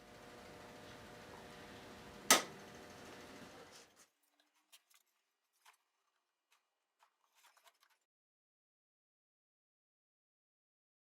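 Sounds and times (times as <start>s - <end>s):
sharp click: 2.3s - 2.5s.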